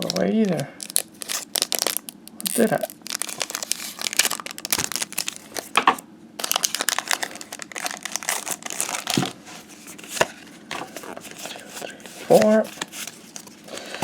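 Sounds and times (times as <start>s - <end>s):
foil wrapper crinkling: 0.0s - 14.0s
cards being handled: 6.7s - 14.0s.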